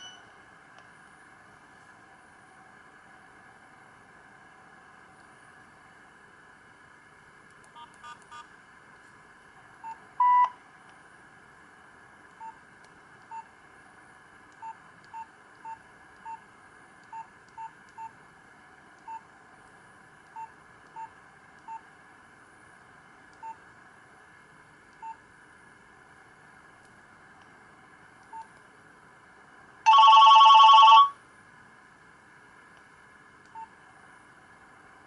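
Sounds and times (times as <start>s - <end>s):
phone keypad beeps: 0.0s - 0.2s, 10.2s - 10.5s, 29.9s - 31.1s.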